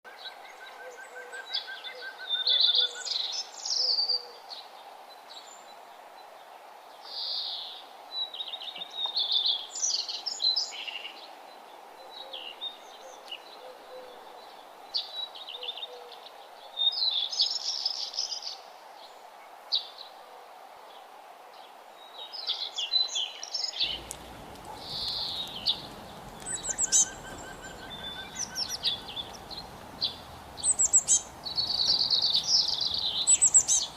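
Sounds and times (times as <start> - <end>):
steady background hiss: 0.2 - 33.9
birds chirping and trilling: 23.6 - 33.9.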